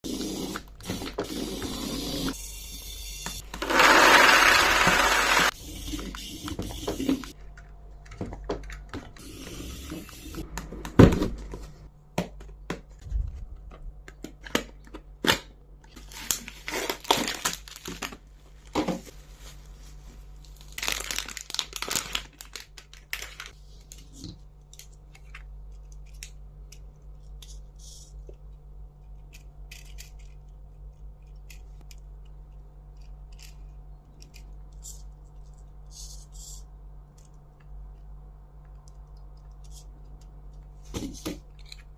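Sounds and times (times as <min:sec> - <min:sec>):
low steady hum: 0:05.5 - 0:41.9
packaging tearing and crinkling: 0:16.0 - 0:18.2, 0:20.4 - 0:23.6.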